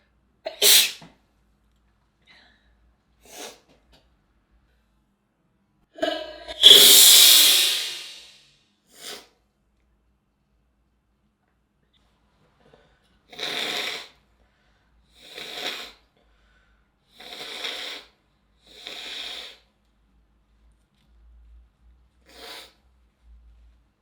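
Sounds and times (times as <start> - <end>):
woman sneezing: 0.5 - 1.0, 6.5 - 8.3.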